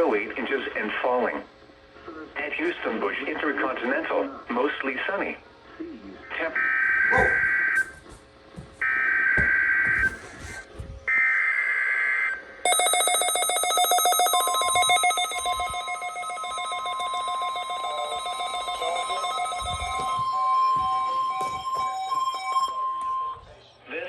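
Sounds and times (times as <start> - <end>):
steady warning alarm tone: 6.4 - 8.0, 8.8 - 23.6
shrill rapid alarm beeping: 6.5 - 8.0, 8.8 - 23.6
warbling electronic data burst: 12.7 - 23.4.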